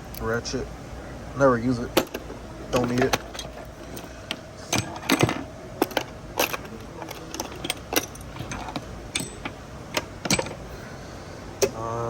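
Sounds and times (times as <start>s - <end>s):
metal hand tools clinking: 1.9s - 10.6s.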